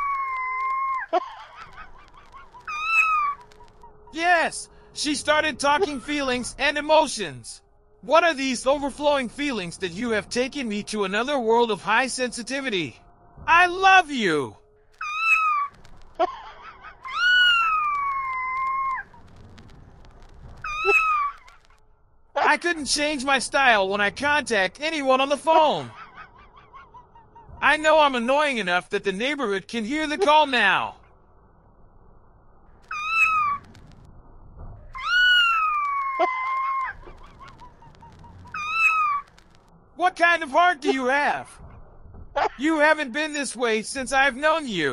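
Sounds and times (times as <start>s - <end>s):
cat meowing: 32.9s - 33.6s, 35.0s - 37.0s, 38.5s - 39.3s.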